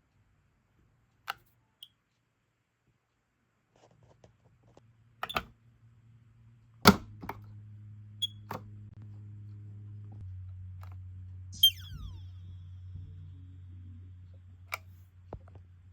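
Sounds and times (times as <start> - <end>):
steady low hum: 5.6 - 15.9
smoke alarm chirp: 11.6 - 12.5.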